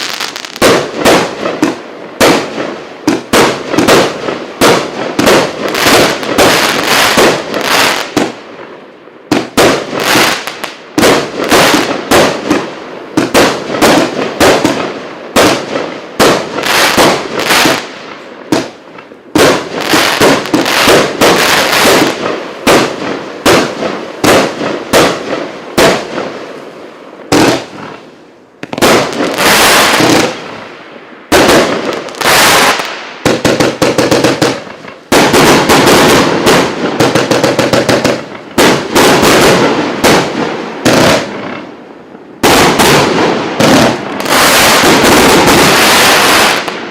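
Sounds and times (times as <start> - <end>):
firework aerial bursts crackling: 0.0 - 46.9.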